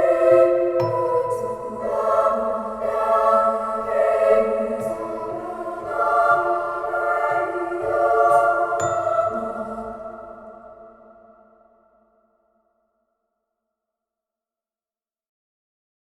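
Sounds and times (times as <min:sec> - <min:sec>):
choir-like vocal sound: 0:00.0 - 0:11.9.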